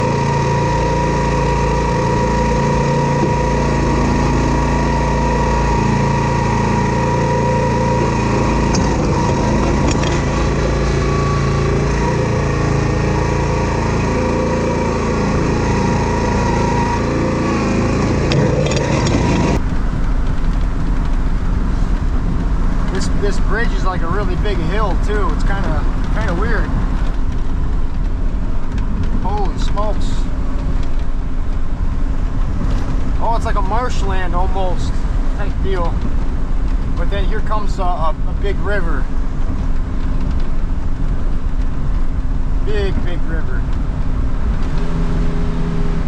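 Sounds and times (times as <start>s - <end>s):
vehicle engine and road noise: 0.0s - 46.0s.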